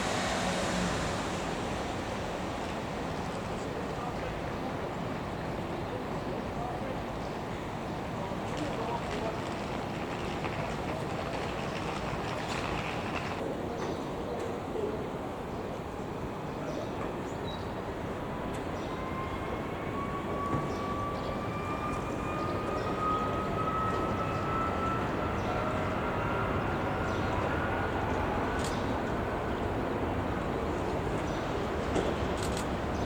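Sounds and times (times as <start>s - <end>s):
rising engine whine: 0.0s - 4.6s, 18.7s - 29.2s
jet engines rushing: 0.0s - 5.2s, 8.4s - 13.4s.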